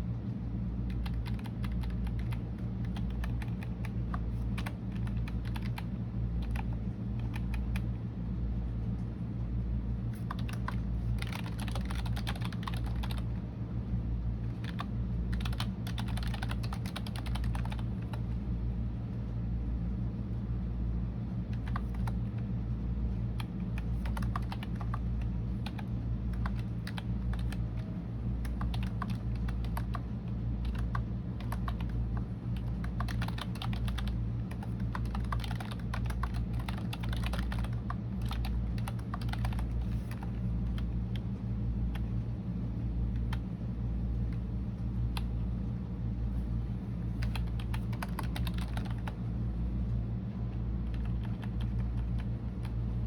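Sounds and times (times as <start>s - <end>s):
steady low hum: 0.0s - 53.0s
typing on computer keyboard: 0.9s - 7.9s, 10.2s - 13.2s, 14.4s - 18.3s, 21.5s - 22.3s, 23.4s - 40.9s, 47.2s - 49.2s, 50.8s - 52.8s.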